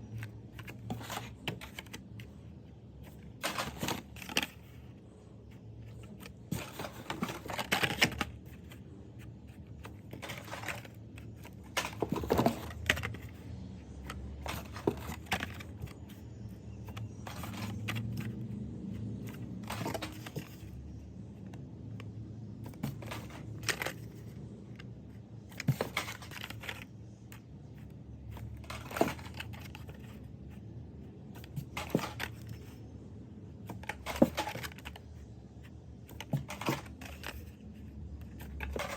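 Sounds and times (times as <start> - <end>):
low steady hum: 0.0 - 38.9
plastic packs clicking and rattling: 0.1 - 13.4, 14.0 - 18.5, 19.2 - 20.8, 22.6 - 24.8, 25.4 - 27.4, 28.3 - 30.2, 31.3 - 32.8, 33.7 - 38.9.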